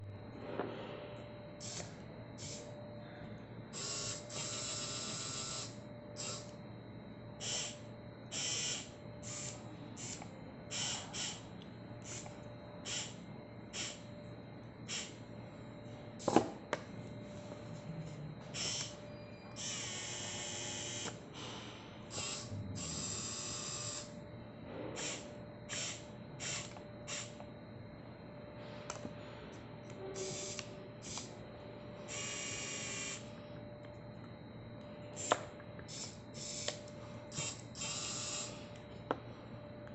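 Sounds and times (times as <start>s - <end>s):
servo motors whirring: 3.8s - 6.5s, 18.5s - 19.0s, 22.1s - 24.1s, 35.2s - 38.6s.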